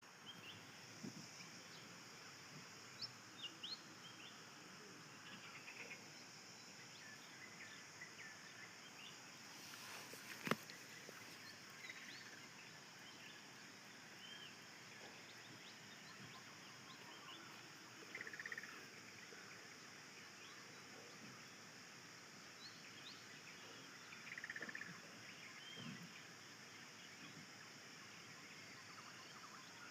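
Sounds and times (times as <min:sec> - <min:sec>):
steady high hiss: 0:00.0 - 0:29.9.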